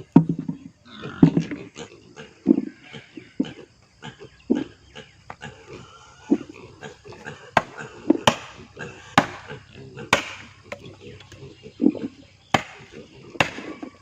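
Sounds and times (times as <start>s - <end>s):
sharp chopping strikes: 7.6s - 8.6s, 9.2s - 9.5s, 10.1s - 10.8s, 12.5s - 13.7s.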